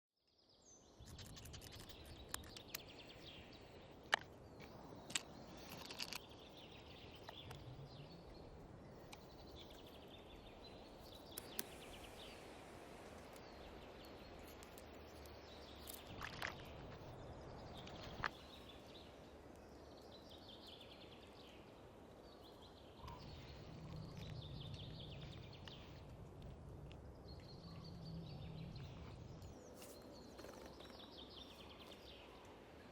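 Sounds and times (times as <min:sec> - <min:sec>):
small birds chirping: 0:00.3 - 0:32.9.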